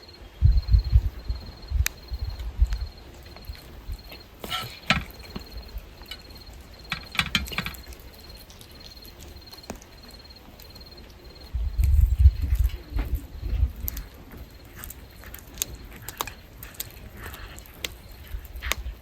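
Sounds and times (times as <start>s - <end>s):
cricket chirping: 0.0s - 19.0s
sharp clicks and rustles: 1.8s - 11.2s, 11.8s - 19.0s.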